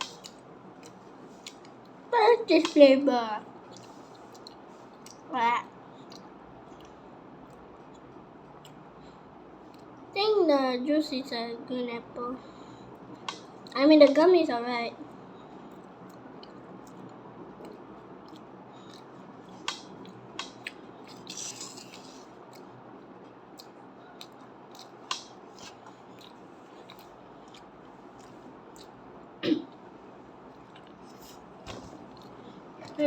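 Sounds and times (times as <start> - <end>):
chewing candy and gum: 3.7 - 5.3, 6.0 - 8.8, 15.6 - 29.9, 30.5 - 33.0.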